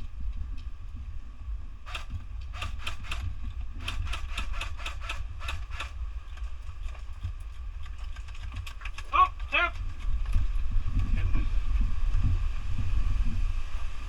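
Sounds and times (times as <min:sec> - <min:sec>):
steady low rumble: 0:00.0 - 0:14.0
sharp irregular clicks: 0:01.9 - 0:10.4.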